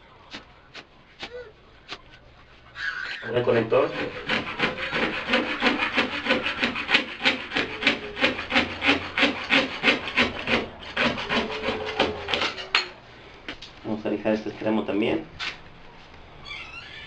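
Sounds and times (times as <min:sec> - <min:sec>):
sandpaper scraping plastic pipe: 0:03.2 - 0:12.7.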